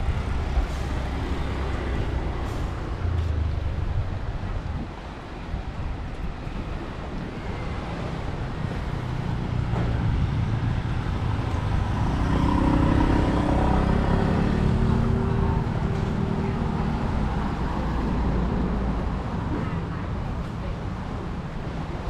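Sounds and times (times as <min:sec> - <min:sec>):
vehicle engine passing by: 0:10.1 - 0:17.4.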